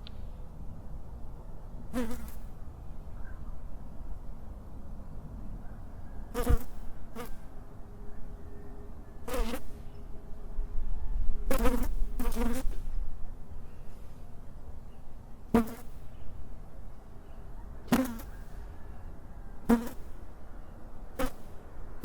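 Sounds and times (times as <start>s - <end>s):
fly buzzing: 1.9s - 2.5s, 6.4s - 7.4s, 11.5s - 12.8s, 15.6s - 16.0s, 17.9s - 18.4s, 19.7s - 20.1s, 21.2s - 21.4s.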